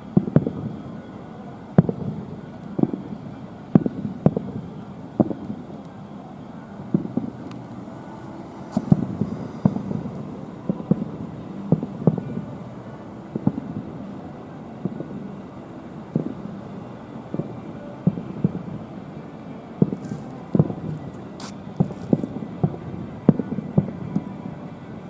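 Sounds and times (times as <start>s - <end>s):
fireworks booming: 8.7s - 12.5s.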